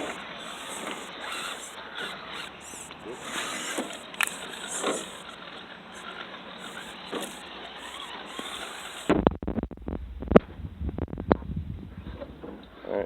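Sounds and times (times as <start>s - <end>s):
small electric motor whirring: 0.0s - 9.3s
low wind rumble on microphone: 9.1s - 12.8s.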